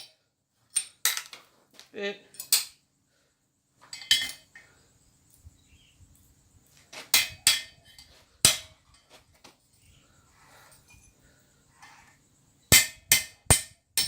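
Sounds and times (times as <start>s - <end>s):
hammer striking steel punch: 8.4s - 8.8s, 12.7s - 14.0s.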